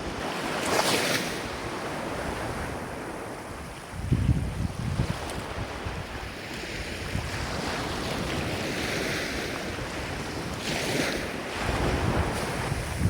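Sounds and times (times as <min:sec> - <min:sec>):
ocean waves on shore: 0:00.0 - 0:13.0
wind buffeting microphone: 0:01.4 - 0:13.0.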